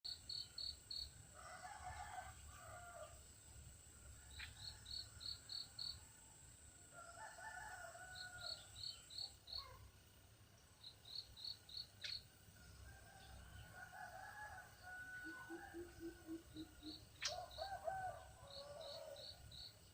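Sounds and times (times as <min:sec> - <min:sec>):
high insect drone: 0:00.1 - 0:19.9
faint rooster crowing: 0:01.3 - 0:03.2, 0:04.1 - 0:08.9, 0:12.6 - 0:19.7.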